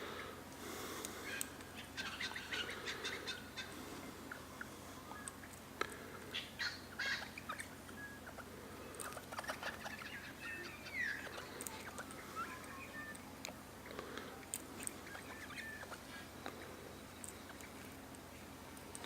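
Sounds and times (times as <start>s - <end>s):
birds chirping and clicking: 0.1s - 19.0s
bird falling call: 6.2s - 16.8s.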